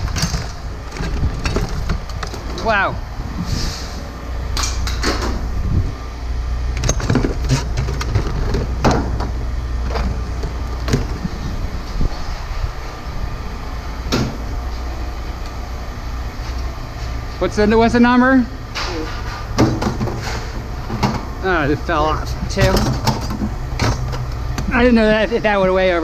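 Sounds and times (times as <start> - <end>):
metal scrap knocks and clanks: 0.0 - 2.6, 6.8 - 11.3, 18.7 - 21.3, 22.5 - 24.7
engine idling hum: 0.0 - 26.0.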